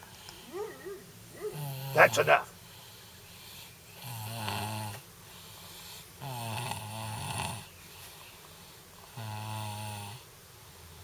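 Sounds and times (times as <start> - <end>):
quiet breathing: 1.4 - 3.9, 5.2 - 6.2.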